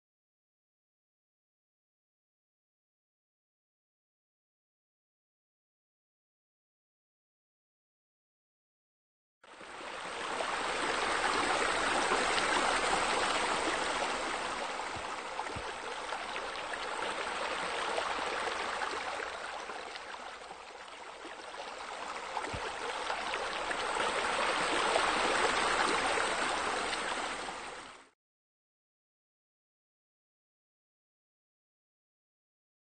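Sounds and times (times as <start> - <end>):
water cascading and splashing: 21.9 - 28.0.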